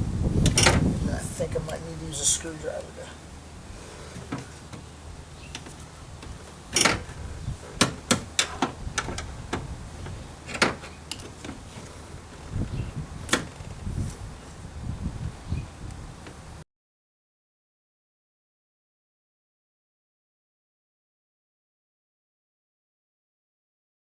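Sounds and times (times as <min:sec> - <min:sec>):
dull handling knocks: 0:04.1 - 0:04.9, 0:05.5 - 0:12.7.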